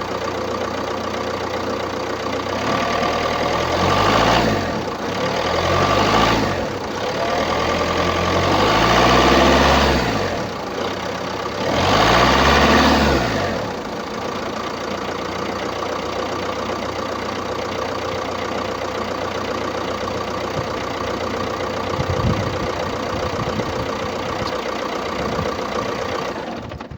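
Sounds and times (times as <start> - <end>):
diesel engine revving and idling: 0.0 - 26.9.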